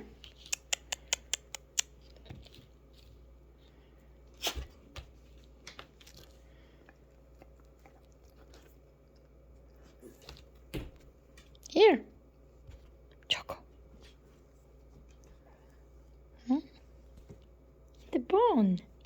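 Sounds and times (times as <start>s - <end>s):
puppy teeth clicking on bone: 0.2s - 2.6s.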